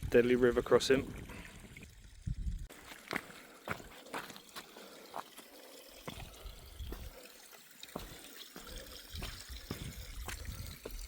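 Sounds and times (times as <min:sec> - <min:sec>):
stream trickling: 0:00.0 - 0:11.0
footsteps crossing stream: 0:02.7 - 0:11.0.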